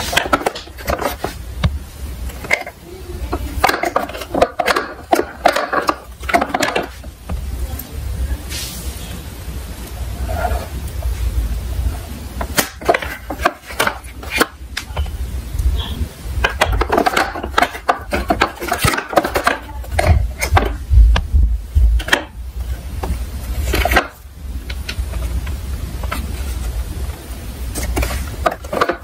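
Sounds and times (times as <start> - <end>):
toy cars rolling: 2.2 - 7.1, 16.4 - 20.7, 27.7 - 29.0.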